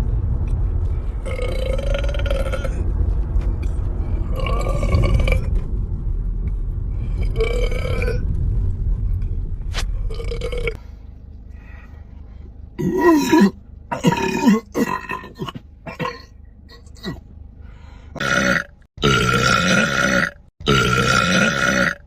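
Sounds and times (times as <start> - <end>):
low steady rumble: 0.0 - 22.0
man burping: 12.8 - 17.2, 18.2 - 22.0.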